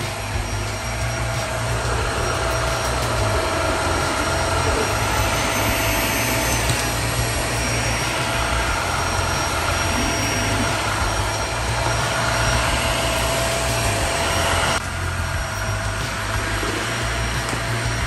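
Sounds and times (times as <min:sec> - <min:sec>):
vacuum cleaner motor running: 0:00.0 - 0:18.0.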